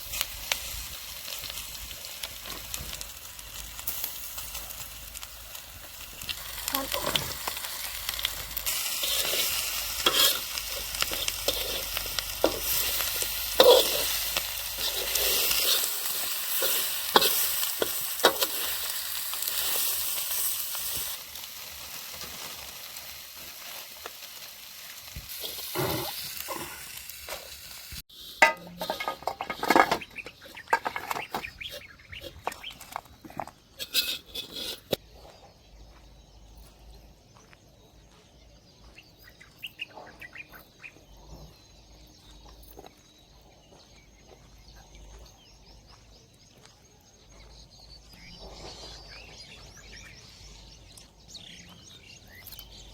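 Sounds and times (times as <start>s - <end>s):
food sizzling in a pan: 0.0s - 32.5s
spatula scraping a pan: 6.6s - 21.1s, 28.1s - 35.0s.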